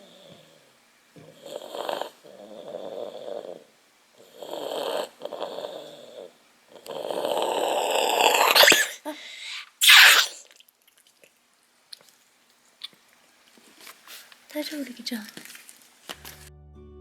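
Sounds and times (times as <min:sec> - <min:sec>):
cat breathing with rasping snore: 0:01.3 - 0:03.7, 0:04.3 - 0:08.8.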